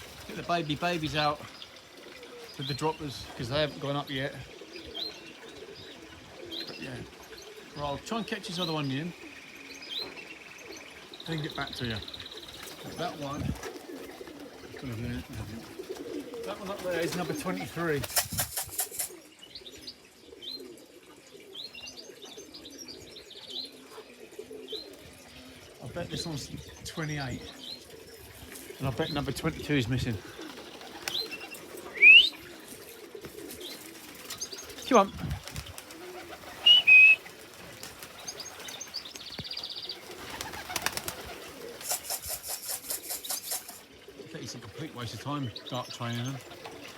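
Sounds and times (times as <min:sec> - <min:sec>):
pigeons cooing: 0:00.0 - 0:46.9
small birds chirping: 0:00.0 - 0:46.9
pigeon wings clapping: 0:12.3 - 0:19.2, 0:30.2 - 0:43.9, 0:46.2 - 0:46.9
person whistling two notes: 0:32.0 - 0:32.3, 0:36.7 - 0:37.2.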